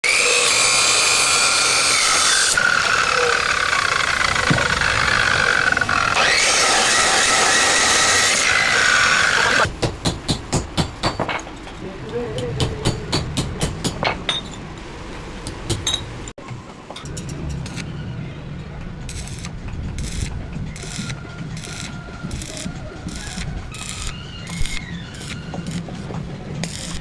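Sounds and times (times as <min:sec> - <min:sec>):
metal grinding hiss: 0:00.0 - 0:11.2.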